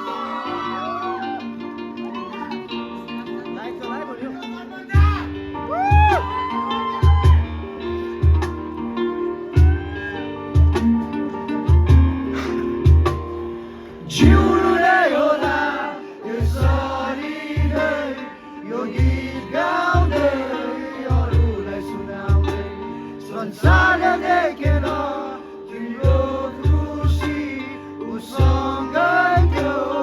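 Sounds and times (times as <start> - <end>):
guitar: 0.0 - 30.0
kick drum beat: 5.0 - 7.6, 8.2 - 8.7, 9.6 - 10.0, 10.6 - 11.1, 11.7 - 13.4, 14.2 - 14.8, 16.4 - 17.0, 17.6 - 18.0, 19.0 - 20.4, 21.1 - 22.7, 23.6 - 25.1, 26.0 - 27.4, 28.4 - 28.8, 29.4 - 29.8
person singing: 14.0 - 30.0.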